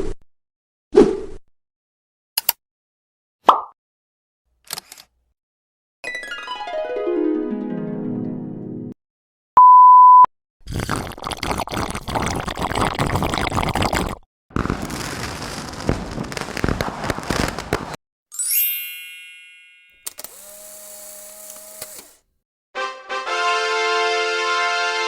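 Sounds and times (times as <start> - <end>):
one-tone beep: 9.6 - 10.3
bright ringing chime: 18.4 - 20.0.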